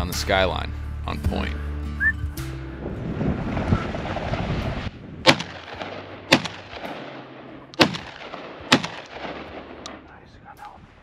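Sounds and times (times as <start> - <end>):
wind buffeting microphone: 2.6 - 11.0.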